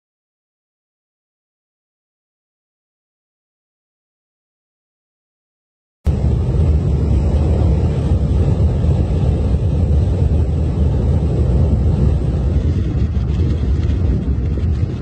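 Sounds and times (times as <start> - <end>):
geyser venting steam and water: 6.1 - 15.0.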